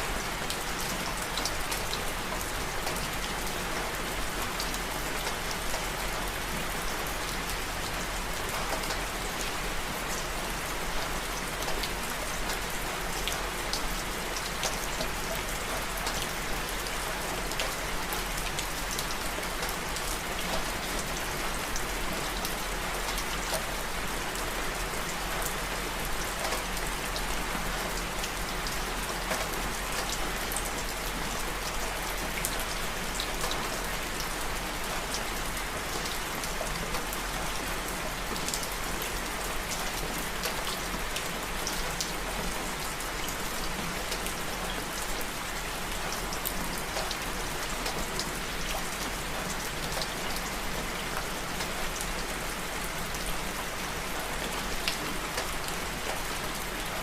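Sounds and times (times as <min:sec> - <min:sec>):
rain drops pattering: 0:00.1 - 0:57.0.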